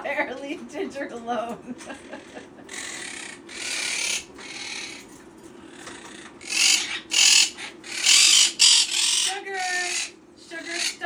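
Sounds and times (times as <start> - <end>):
steady low hum: 0.0 - 11.0
parrot squawks: 2.7 - 5.1, 5.7 - 11.0.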